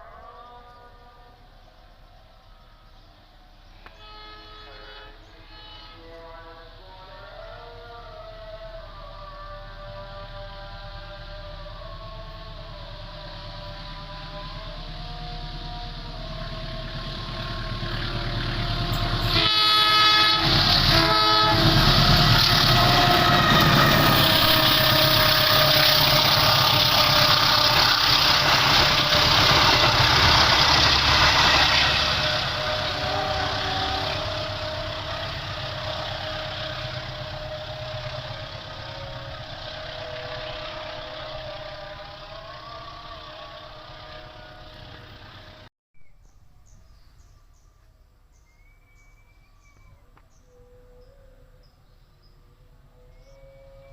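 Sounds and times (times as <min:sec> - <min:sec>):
train passing: 0:00.0 - 0:45.7
locomotive horn blasts: 0:03.8 - 0:07.2, 0:09.3 - 0:45.7, 0:52.9 - 0:53.9.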